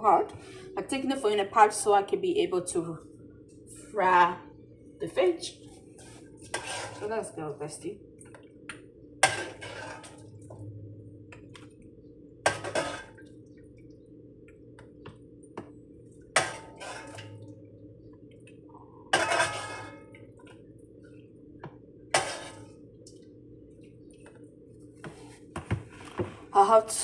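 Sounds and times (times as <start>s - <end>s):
steady low hum: 0.0s - 27.0s
pot and utensils knocking: 19.1s - 20.2s.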